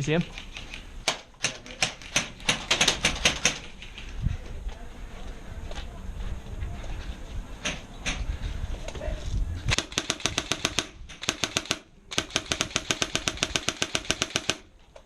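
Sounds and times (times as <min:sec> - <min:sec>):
airsoft gun firing full auto: 0:09.8 - 0:14.7.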